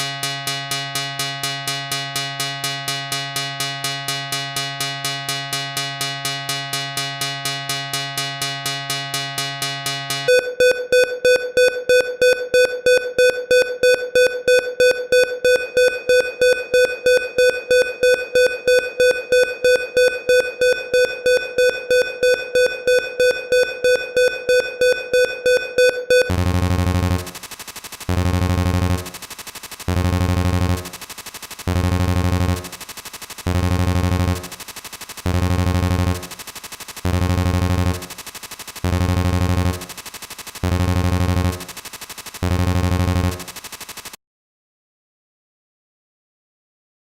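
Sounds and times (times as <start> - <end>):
steady beeping tone: 0.1 - 27.4
fast buzzing pulse: 0.2 - 44.2
low buzz turning on and off: 26.3 - 44.1.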